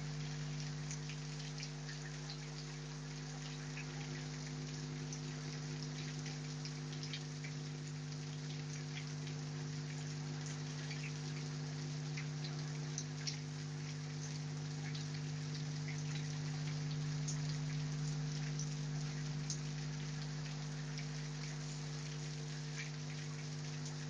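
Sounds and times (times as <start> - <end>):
low electrical hum: 0.0 - 24.0.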